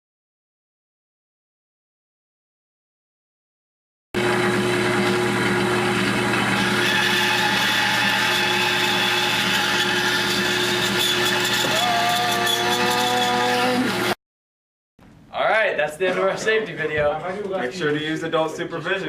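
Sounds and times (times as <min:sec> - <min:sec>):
bandsaw motor humming: 0:04.2 - 0:14.2.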